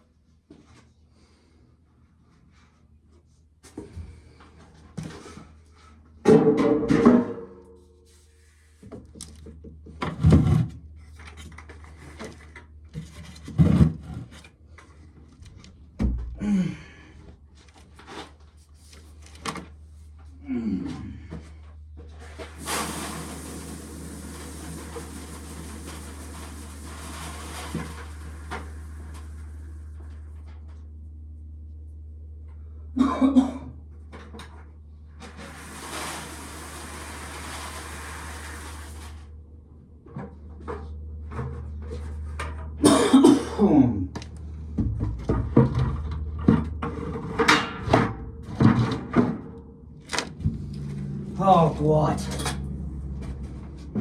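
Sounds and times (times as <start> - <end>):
pails clattering and thudding: 6.2 - 7.6, 22.0 - 29.6, 44.7 - 51.5
corn kernels pouring from a pail: 22.5 - 29.6, 35.4 - 39.3
steady low hum: 39.2 - 54.0.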